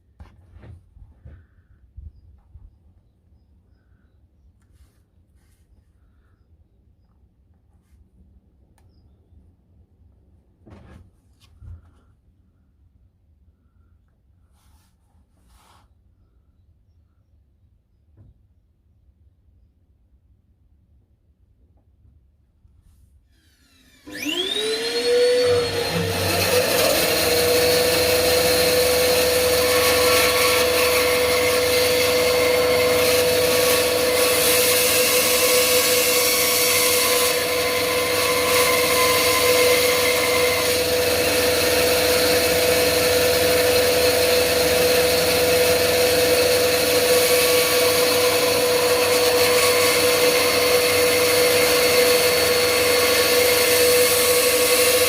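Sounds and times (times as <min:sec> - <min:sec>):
electric sander running: 0:23.4 - 0:55.0.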